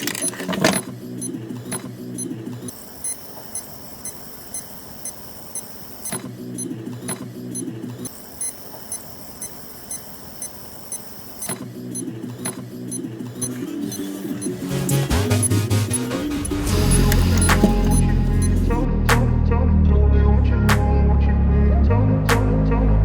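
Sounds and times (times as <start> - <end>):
light ticking beat: 8.4 - 18.8.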